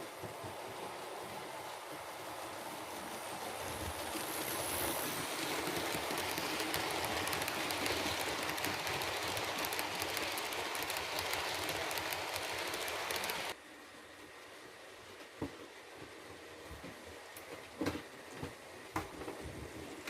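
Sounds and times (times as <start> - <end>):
hiss of sampled steam: 0.0 - 13.6
wheels clicking on track: 2.8 - 13.6.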